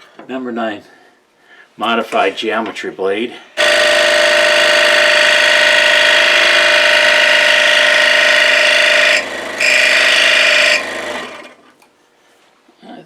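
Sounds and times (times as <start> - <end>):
scroll saw cutting wood: 3.6 - 11.7.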